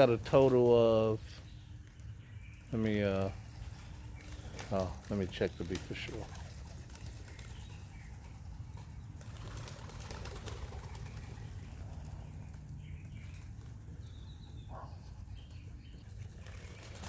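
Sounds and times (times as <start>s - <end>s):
pigeon wings flapping: 2.8s - 14.0s, 16.1s - 17.0s.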